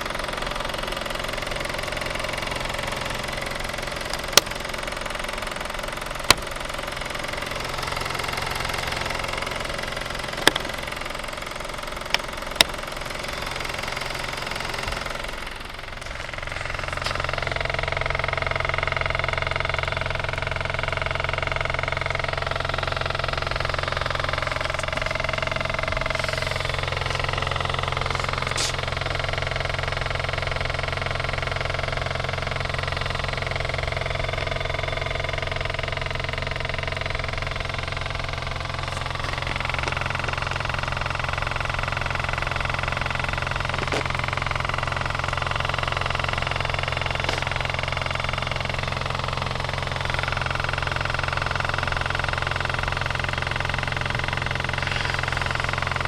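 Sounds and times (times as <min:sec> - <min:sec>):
car engine idling with rattle: 0:00.0 - 0:56.0
sharp clicks: 0:07.8 - 0:17.7.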